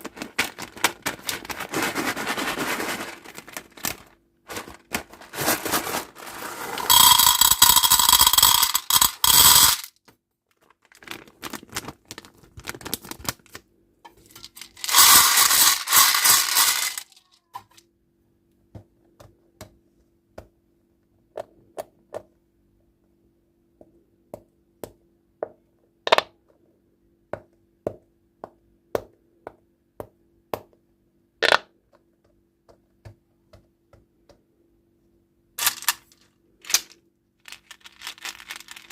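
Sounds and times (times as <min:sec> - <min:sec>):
plastic packaging crinkling: 0:00.0 - 0:09.9, 0:10.5 - 0:13.6, 0:14.3 - 0:17.3, 0:35.6 - 0:38.9
small hard objects clicking: 0:06.8 - 0:10.0, 0:14.3 - 0:17.8, 0:35.6 - 0:38.9.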